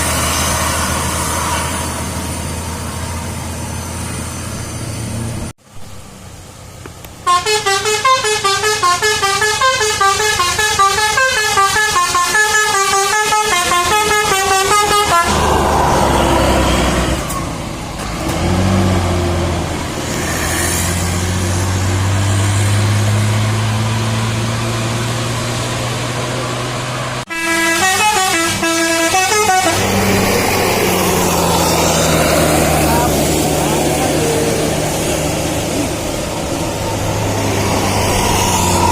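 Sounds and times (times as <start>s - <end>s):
bus engine running: 0.0s - 38.9s
multi-tone bus horn melody: 7.2s - 17.1s, 27.3s - 33.2s.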